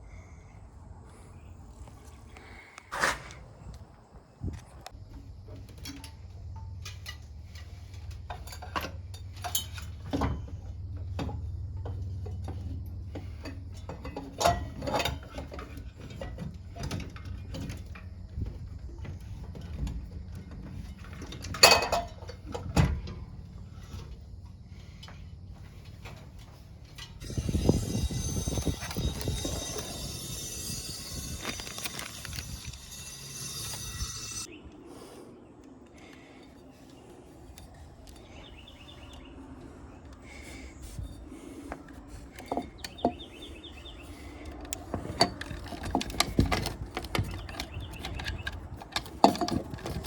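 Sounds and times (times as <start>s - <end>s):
metal hardware clinking and knocking: 5.1s - 24.1s, 26.9s - 34.5s, 42.3s - 43.7s, 44.6s - 50.0s.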